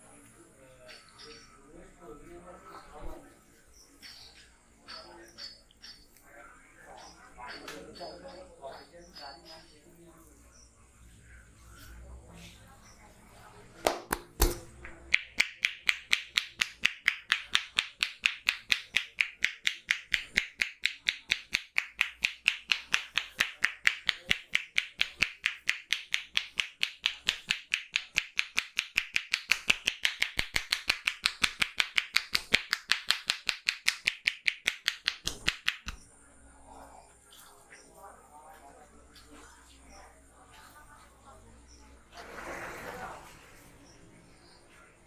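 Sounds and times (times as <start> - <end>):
rapid hand claps: 13.8 - 36.0.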